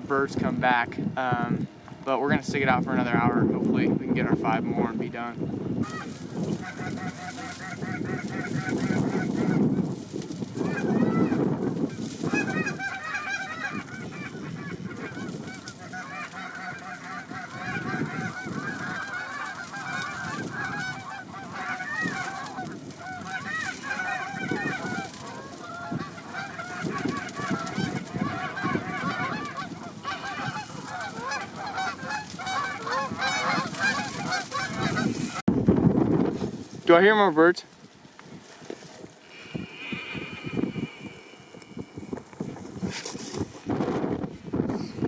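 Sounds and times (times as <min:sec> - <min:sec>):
wind rumbling on microphone: 0:00.0 - 0:45.0
geese honking and clucking: 0:02.5 - 0:35.4.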